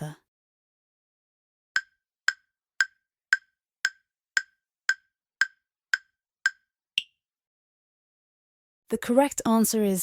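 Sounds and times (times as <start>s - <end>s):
timer ticking clicks: 1.8s - 7.2s.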